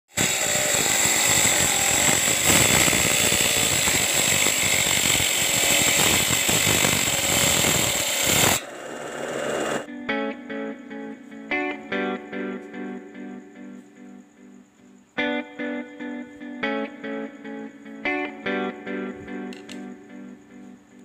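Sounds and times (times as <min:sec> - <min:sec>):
motor saw cutting wood: 0:00.1 - 0:09.9
guitar music: 0:09.8 - 0:21.0.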